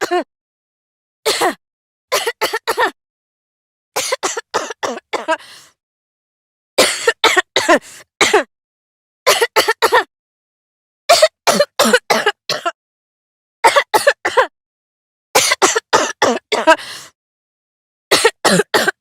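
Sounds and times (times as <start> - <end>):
girl coughing: 0.0 - 0.3, 1.3 - 3.0, 4.0 - 5.4, 6.8 - 8.5, 9.3 - 10.1, 11.1 - 12.8, 13.6 - 14.6, 15.4 - 16.8, 18.1 - 19.0.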